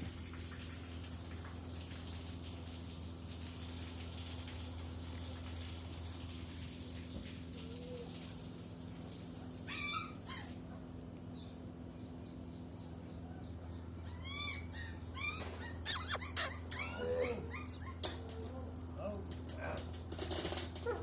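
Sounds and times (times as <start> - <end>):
dog whining: 15.2 - 19.2, 19.9 - 20.5
sharp short loud noises: 15.9 - 16.9.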